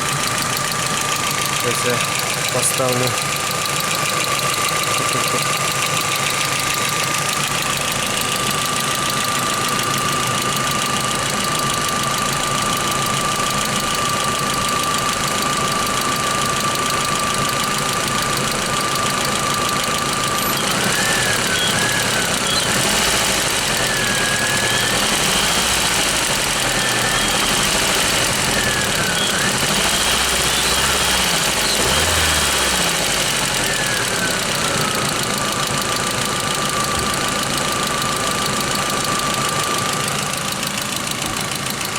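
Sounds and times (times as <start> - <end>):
car engine running with ticking: 0.0 - 41.9.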